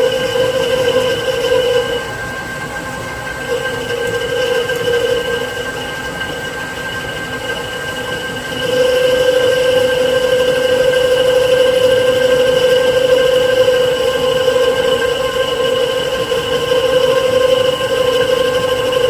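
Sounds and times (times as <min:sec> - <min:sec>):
lathe machine whine: 0:00.0 - 0:19.0
ringing tone from cutting: 0:03.4 - 0:06.6, 0:07.3 - 0:19.0.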